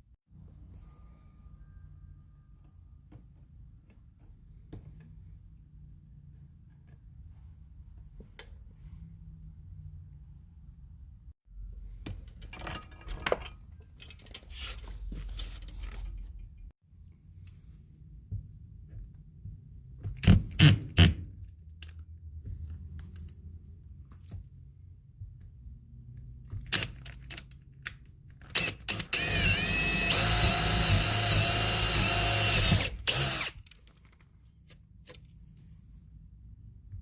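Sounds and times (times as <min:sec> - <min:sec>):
power drill boring: 0:28.6 - 0:33.7.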